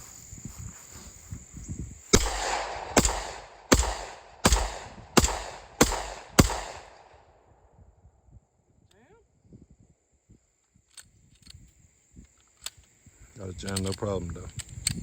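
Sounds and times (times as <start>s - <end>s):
pistol shots: 2.2s - 7.2s.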